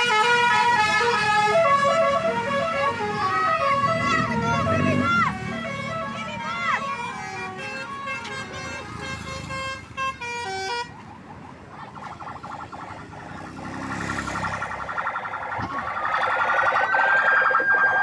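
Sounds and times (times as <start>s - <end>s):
musical bus horn: 0.0s - 10.9s
siren-like warble: 11.0s - 18.0s.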